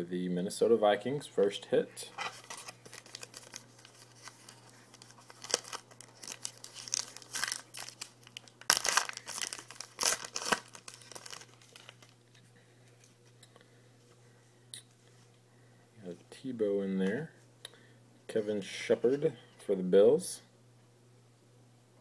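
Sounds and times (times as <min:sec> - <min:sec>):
wrapper tearing and crinkling: 0:02.3 - 0:12.2.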